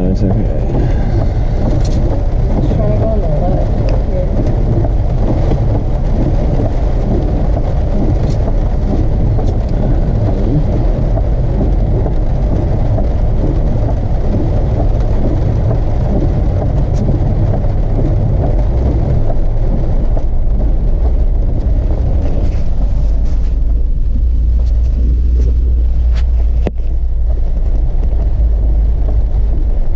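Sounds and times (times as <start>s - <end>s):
car engine and tyre rumble: 0.0s - 29.9s.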